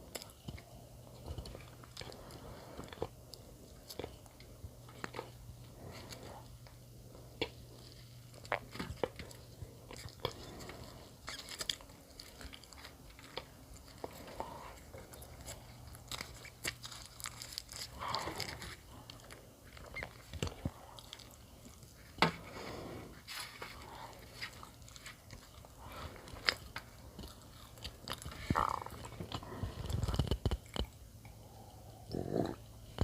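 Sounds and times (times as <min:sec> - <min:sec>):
chewing bread: 0:00.0 - 0:22.6, 0:23.2 - 0:33.0
crisp crunches: 0:07.7 - 0:22.2, 0:23.2 - 0:30.9.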